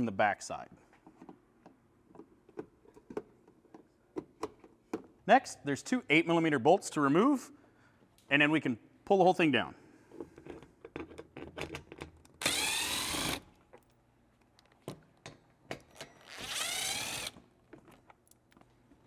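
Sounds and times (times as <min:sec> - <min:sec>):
power drill spinning out bolts: 0:12.4 - 0:13.5, 0:16.0 - 0:17.4.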